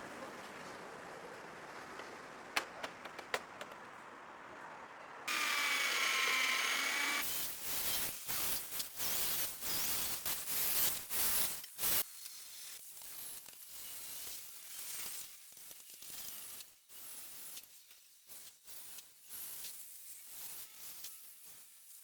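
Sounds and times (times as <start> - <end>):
power tool running: 5.3 - 7.3.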